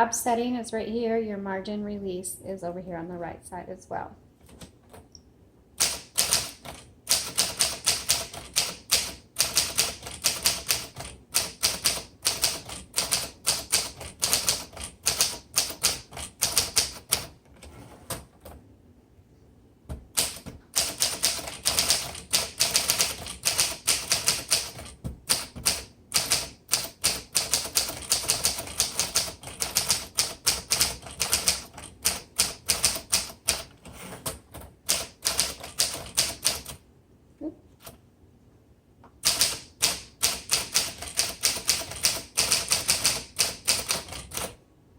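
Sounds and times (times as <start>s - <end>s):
manual typewriter typing: 5.8s - 18.6s, 20.1s - 36.8s, 39.2s - 44.6s.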